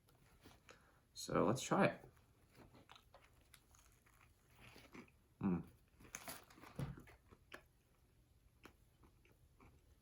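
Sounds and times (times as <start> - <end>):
person biting and chewing: 2.5 - 10.0.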